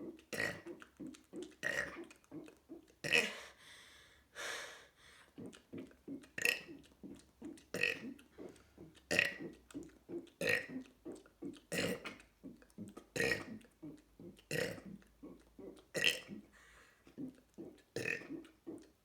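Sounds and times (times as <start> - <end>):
breathy sounds: 0.1 - 19.0
person burping: 0.3 - 0.7, 1.6 - 3.5, 10.4 - 10.8, 11.7 - 12.1, 14.5 - 14.9, 18.0 - 18.4.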